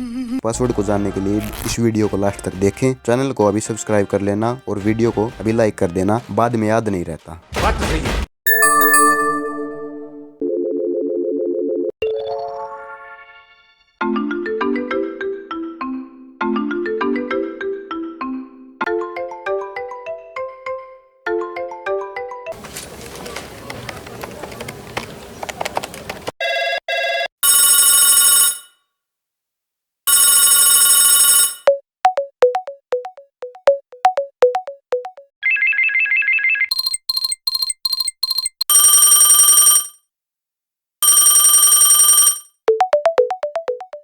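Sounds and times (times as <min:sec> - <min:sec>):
electronic phone ring bursts: 0:08.5 - 0:10.1, 0:26.4 - 0:28.8, 0:30.1 - 0:31.7, 0:36.7 - 0:40.0, 0:41.0 - 0:42.5
ringtone melody: 0:08.5 - 0:12.9, 0:27.4 - 0:28.7, 0:30.1 - 0:35.3, 0:36.7 - 0:39.9, 0:41.0 - 0:44.0
rapid beeps: 0:36.7 - 0:39.5.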